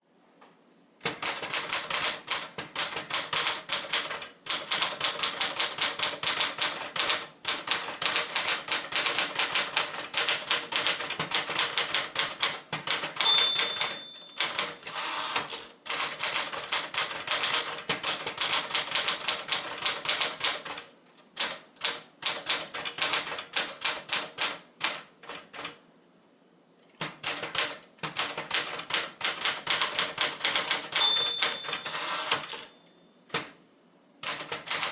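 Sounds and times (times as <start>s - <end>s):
typewriter keystroke clacks: 1.0s - 25.8s, 26.9s - 32.7s, 33.3s - 33.6s, 34.2s - 34.9s
typewriter bell ringing: 13.2s - 15.5s, 30.8s - 33.2s.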